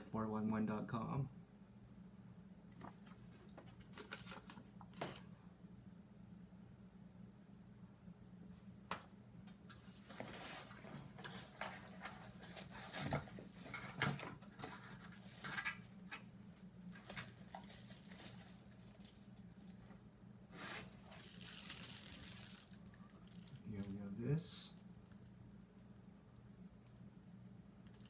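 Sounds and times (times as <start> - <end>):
steady low hum: 0.0 - 21.7, 22.5 - 28.0
packaging rustling: 2.8 - 5.2, 9.8 - 16.3, 16.9 - 19.9, 20.6 - 23.9
packaging scratching: 10.1 - 16.2, 20.6 - 23.6.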